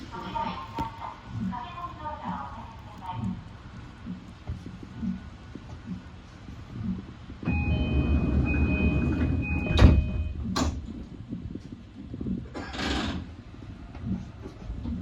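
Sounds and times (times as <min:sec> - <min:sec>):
train doors shutting thud: 0:07.5 - 0:10.9.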